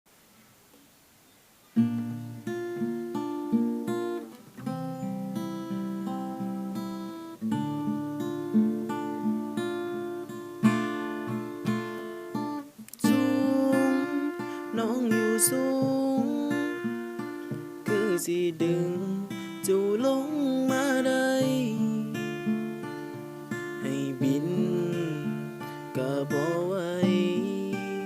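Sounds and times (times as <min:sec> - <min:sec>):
acoustic guitar chords: 0:01.8 - 0:28.0.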